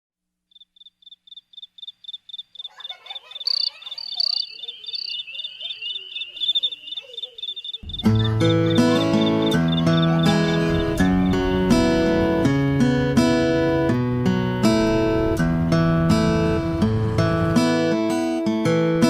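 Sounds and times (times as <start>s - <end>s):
insects chirring: 0.5s - 12.8s
insects chirping: 0.5s - 17.5s
strummed guitar music: 7.8s - 19.0s.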